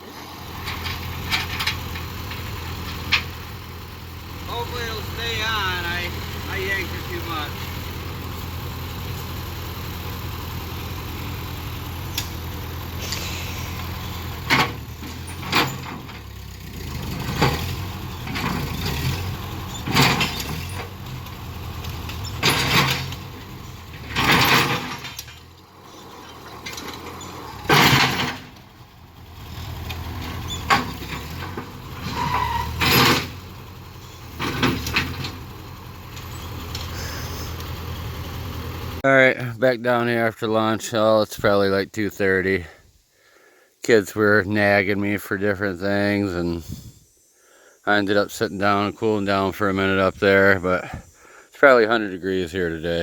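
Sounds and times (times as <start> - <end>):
small engine running: 5.6 - 24.2, 35.4 - 38.8.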